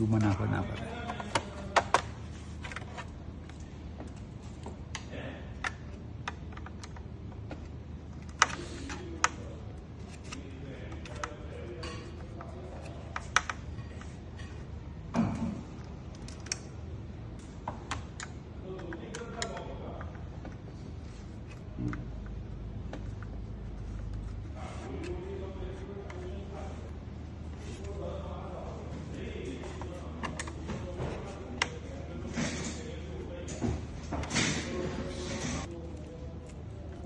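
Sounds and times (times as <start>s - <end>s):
steady low hum: 0.0s - 37.0s
clicks on plastic computer casing: 0.2s - 4.2s.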